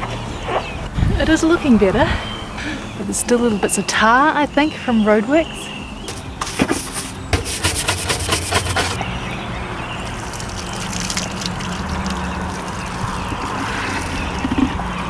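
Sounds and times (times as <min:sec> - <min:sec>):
rubbing strokes of cleaning: 0:06.1 - 0:09.0
steady watery hiss: 0:06.1 - 0:09.0, 0:10.0 - 0:15.0.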